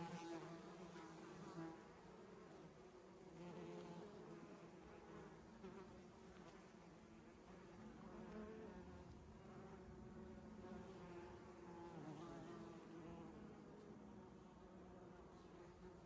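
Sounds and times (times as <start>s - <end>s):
bees buzzing in flight: 0.0s - 0.6s.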